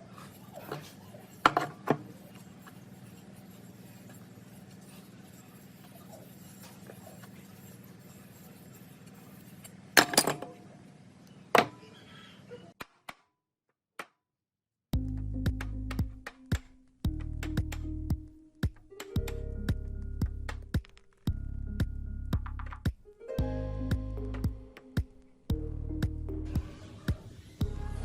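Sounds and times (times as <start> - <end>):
workshop hum: 0.0 - 12.8, 15.0 - 28.0
background music: 15.0 - 28.0.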